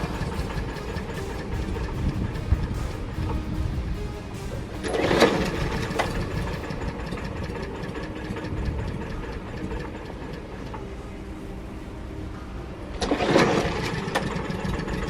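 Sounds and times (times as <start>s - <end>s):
lawn mower engine running: 0.0s - 10.8s.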